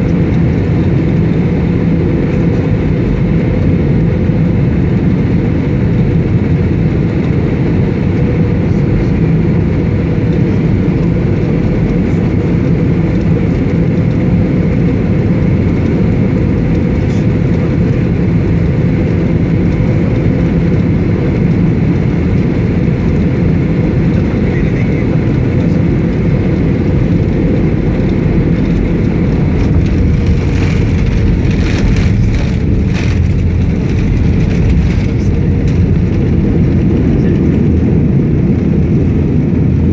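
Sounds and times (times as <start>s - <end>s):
airliner cabin engine rumble: 0.0s - 39.9s.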